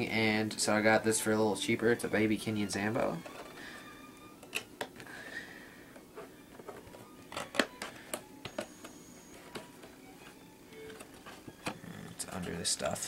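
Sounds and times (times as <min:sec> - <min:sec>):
packaging being handled: 0:06.0 - 0:13.0.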